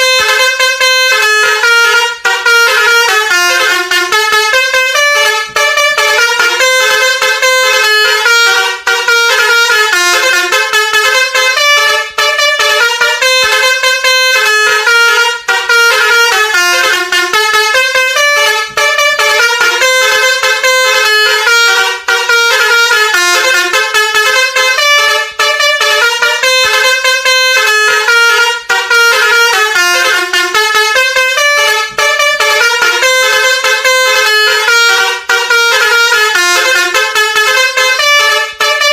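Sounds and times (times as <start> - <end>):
musical horn melody: 0.0 - 38.9.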